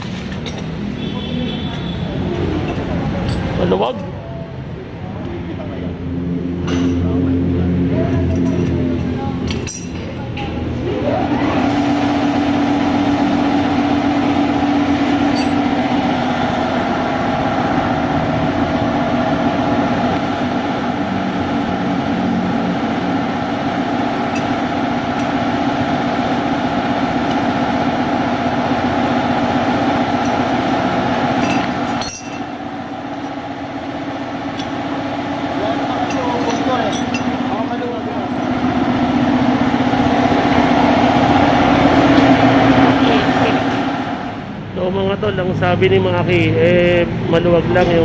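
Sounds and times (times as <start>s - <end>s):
air compressor humming: 0.0s - 48.0s
metal tools clinking: 9.5s - 10.1s, 15.3s - 15.7s, 31.4s - 32.5s, 36.0s - 37.6s.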